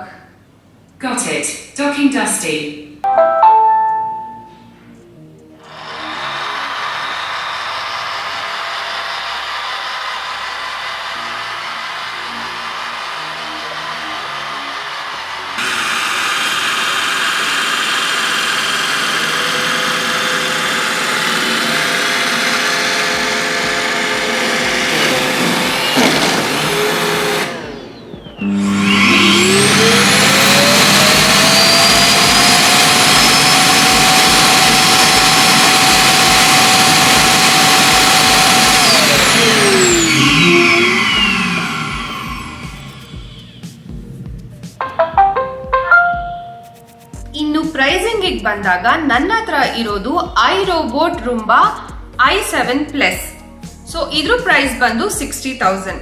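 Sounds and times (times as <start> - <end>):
suction motor running with whine: 5.7 - 44.2.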